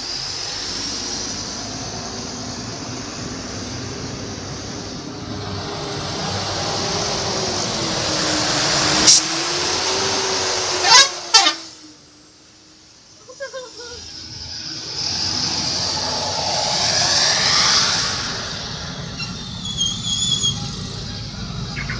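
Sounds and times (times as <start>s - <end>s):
bus passing by: 0.0s - 21.9s.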